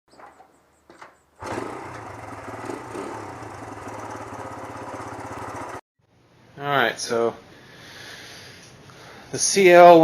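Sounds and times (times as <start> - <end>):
single-cylinder engine running: 1.4 - 5.8.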